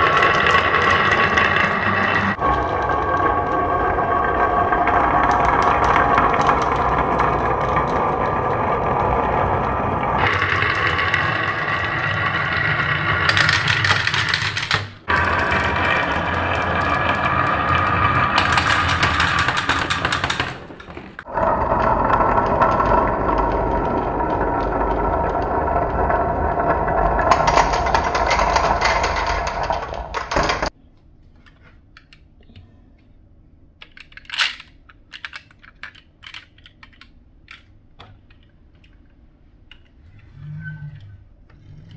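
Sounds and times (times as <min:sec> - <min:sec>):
marbles clicking on wooden blocks: 0:00.0 - 0:30.7, 0:33.8 - 0:40.0
marbles rolling through marble run: 0:00.0 - 0:30.7.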